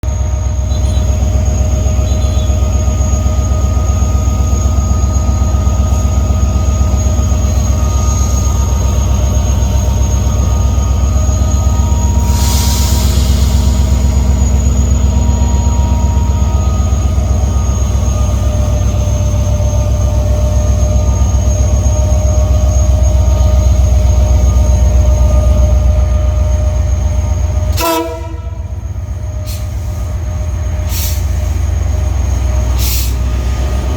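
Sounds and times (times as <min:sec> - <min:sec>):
diesel locomotive engine rumble: 0:00.0 - 0:33.9
steady whine: 0:00.1 - 0:33.9
brief hiss: 0:12.2 - 0:13.8.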